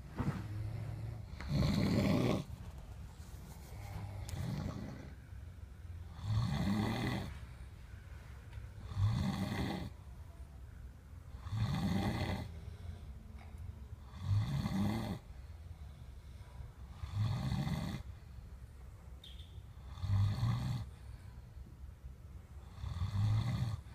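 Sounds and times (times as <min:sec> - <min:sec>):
quiet breathing: 0:00.0 - 0:19.2, 0:19.8 - 0:23.9
person snoring loudly: 0:00.9 - 0:02.5, 0:04.0 - 0:05.2, 0:06.1 - 0:07.3, 0:08.8 - 0:09.9, 0:11.4 - 0:12.5, 0:14.1 - 0:15.2, 0:17.0 - 0:18.1, 0:22.7 - 0:23.9.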